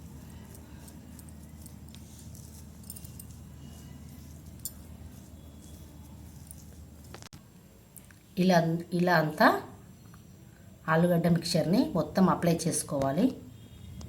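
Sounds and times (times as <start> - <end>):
fingers squishing soft filling: 0.0 - 7.3
steady low hum: 0.0 - 8.4.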